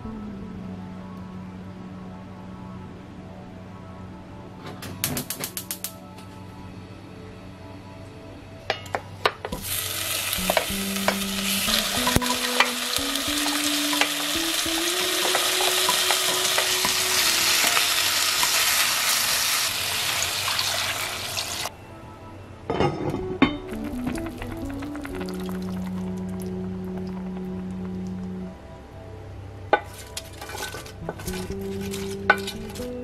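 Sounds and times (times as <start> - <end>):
food sizzling in a pan: 9.6 - 21.7.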